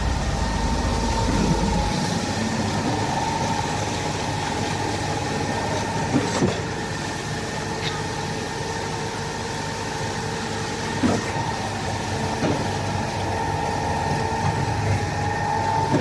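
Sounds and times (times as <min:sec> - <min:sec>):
thin whine: 0:00.0 - 0:04.5
concrete mixer drone: 0:00.0 - 0:16.0.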